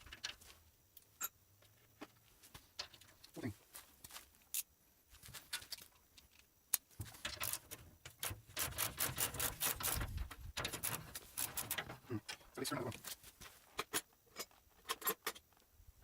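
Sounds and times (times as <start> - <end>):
hand tools clicking and tapping: 5.5 - 13.2
metal scraping on metal: 7.3 - 12.2.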